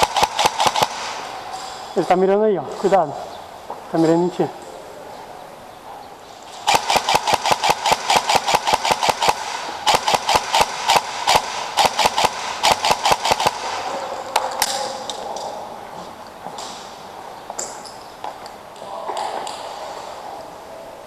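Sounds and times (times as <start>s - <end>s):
airsoft rifle firing: 0.0s - 1.6s, 6.6s - 15.0s.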